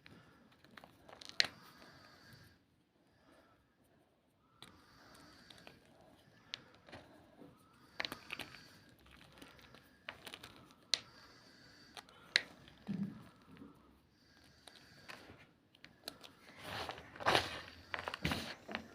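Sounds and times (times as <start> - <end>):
chalk crunching and cracking: 4.6 - 13.7.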